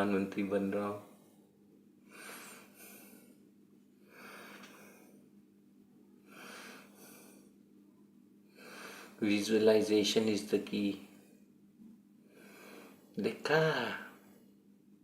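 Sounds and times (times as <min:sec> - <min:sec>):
faint low hum: 0:00.0 - 0:15.0
person breathing softly: 0:01.1 - 0:03.4, 0:04.0 - 0:05.3, 0:06.2 - 0:07.6, 0:08.5 - 0:09.2, 0:12.2 - 0:13.1.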